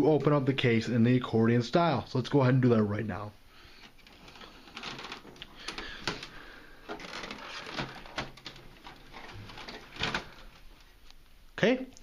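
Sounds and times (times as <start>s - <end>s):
plastic computer case clicking: 6.9s - 10.6s.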